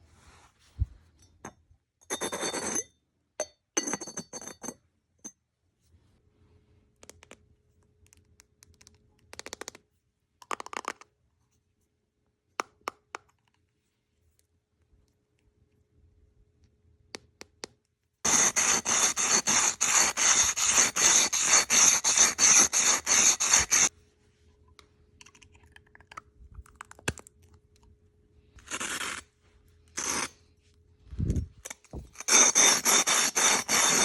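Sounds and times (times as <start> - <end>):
ceramic clinks: 1.2 - 4.8
sanding ceramic lid: 18.3 - 23.9, 30.0 - 30.3, 32.2 - 34.0.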